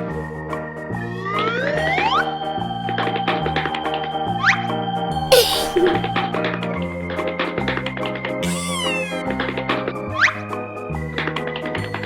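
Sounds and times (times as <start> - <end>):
cartoon background music: 8.4 - 9.3.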